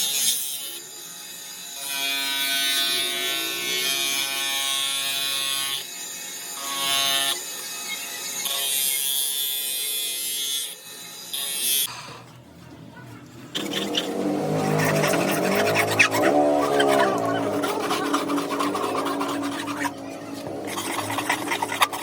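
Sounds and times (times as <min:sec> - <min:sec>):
power tool motor buzzing: 0:13.6 - 0:22.0.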